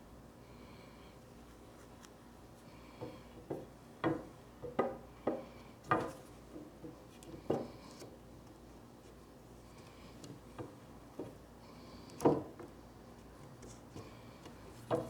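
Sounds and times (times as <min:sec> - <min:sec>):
hard objects knocking: 0:03.0 - 0:07.8.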